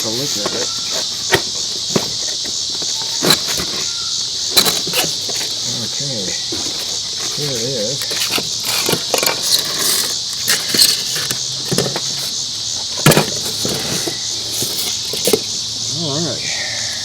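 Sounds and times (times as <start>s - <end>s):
insects chirping: 0.0s - 17.0s
packaging rustling: 6.6s - 11.4s.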